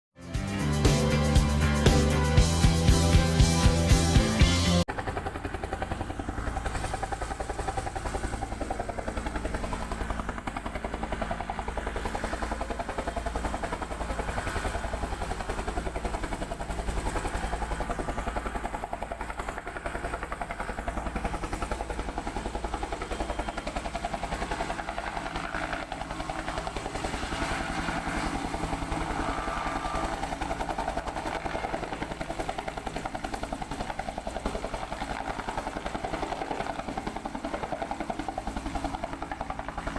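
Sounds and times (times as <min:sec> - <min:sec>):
helicopter engine whine: 0:00.3 - 0:39.9
helicopter rotor blades beating: 0:00.3 - 0:39.9.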